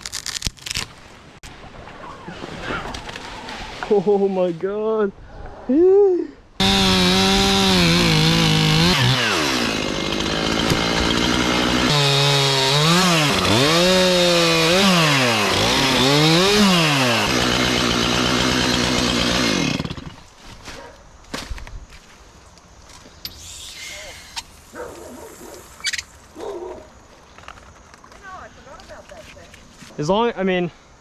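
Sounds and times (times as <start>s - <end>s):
chainsaw revving and cutting: 6.6s - 20.2s.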